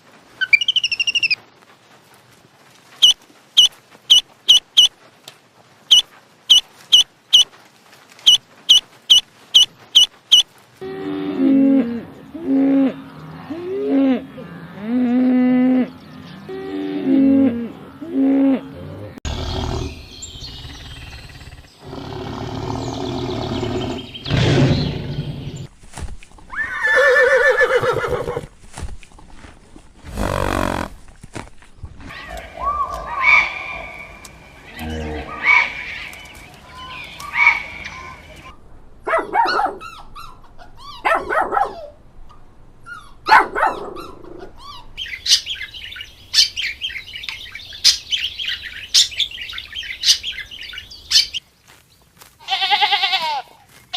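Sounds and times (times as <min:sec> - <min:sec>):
animal calls: 0:32.1 - 0:38.5.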